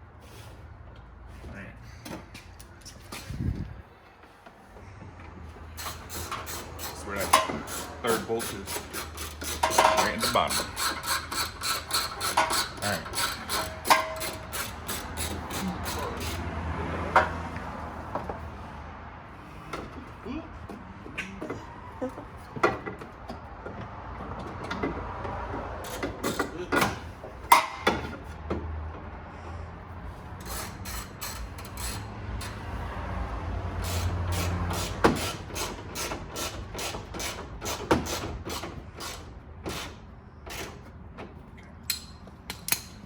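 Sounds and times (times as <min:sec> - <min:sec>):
tools and car parts clicking: 0:05.7 - 0:18.4, 0:22.2 - 0:28.7, 0:30.3 - 0:43.0.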